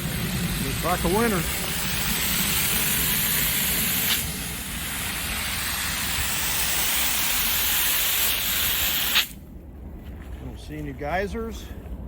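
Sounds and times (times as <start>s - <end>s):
water hissing from hose bibs: 0.0s - 9.4s.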